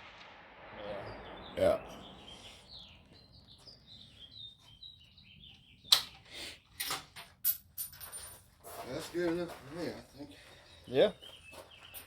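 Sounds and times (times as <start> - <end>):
small birds chirping: 0.8 - 7.2, 8.9 - 12.0.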